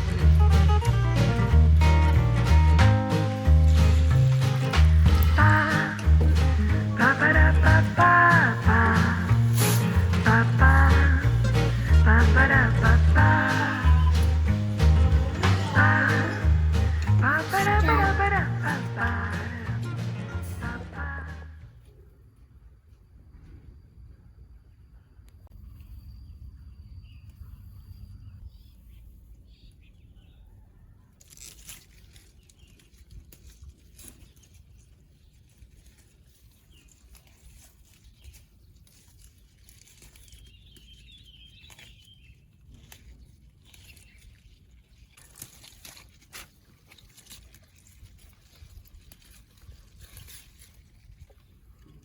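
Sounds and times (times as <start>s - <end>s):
low rumble: 0.0s - 21.7s
plant stems snapping and crinkling: 3.5s - 19.7s, 31.1s - 52.0s.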